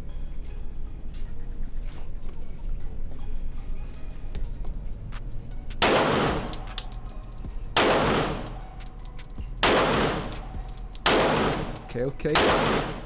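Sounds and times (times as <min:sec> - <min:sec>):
handgun shots echoing: 0:05.8 - 0:13.0.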